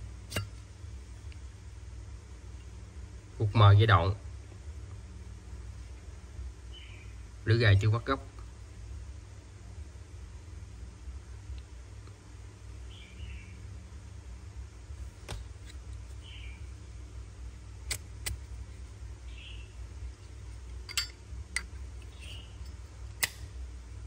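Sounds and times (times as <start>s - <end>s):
low background rumble: 0.0s - 24.0s
metal lighter clicks: 23.2s - 23.5s.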